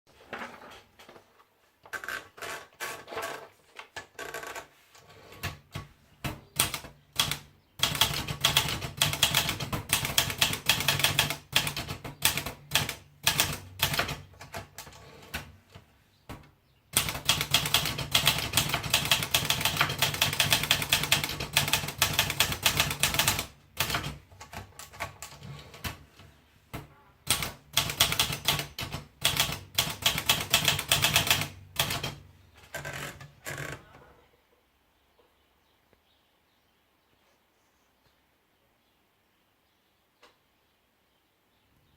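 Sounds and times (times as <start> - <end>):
manual typewriter keystrokes: 5.2 - 15.8, 16.9 - 26.0, 27.2 - 33.7.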